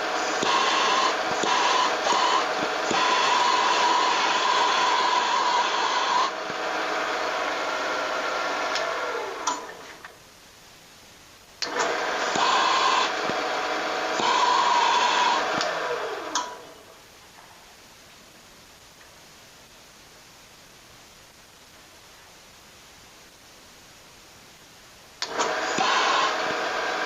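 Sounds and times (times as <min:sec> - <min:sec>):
wood lathe motor running: 0:00.0 - 0:09.8, 0:11.7 - 0:16.6, 0:25.2 - 0:27.0.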